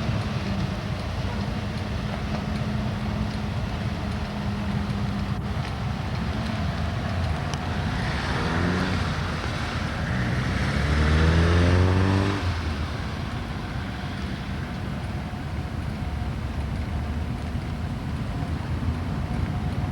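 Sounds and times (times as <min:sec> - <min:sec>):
traffic or wind noise: 0:00.0 - 0:19.9
engine speeding up: 0:07.8 - 0:13.0.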